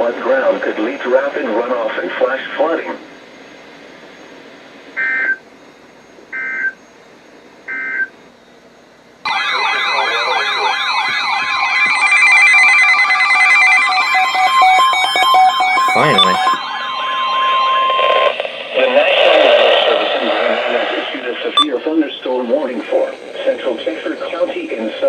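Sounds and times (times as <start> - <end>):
warbling alarm tones: 9.3 - 20.0
alert header data bursts: 12.0 - 18.6.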